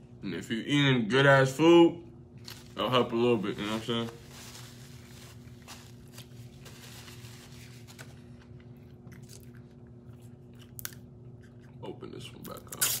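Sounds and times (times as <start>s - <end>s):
steady low hum: 0.0s - 13.0s
person chewing food: 8.4s - 11.9s.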